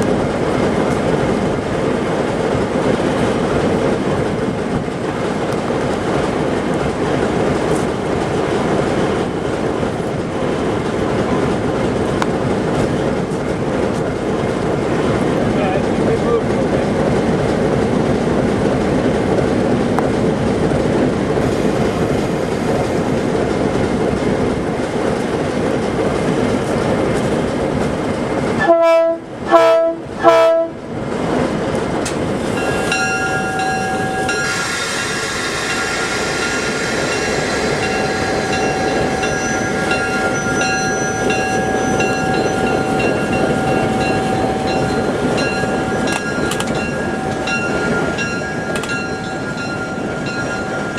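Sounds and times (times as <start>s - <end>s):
diesel train rumbling: 0.0s - 50.9s
train horn blasts: 28.6s - 30.8s
high-pitched squeal: 32.4s - 50.9s.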